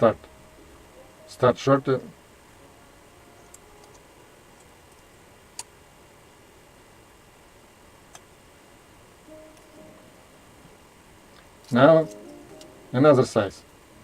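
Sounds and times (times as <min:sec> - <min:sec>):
room hiss: 0:00.0 - 0:14.0.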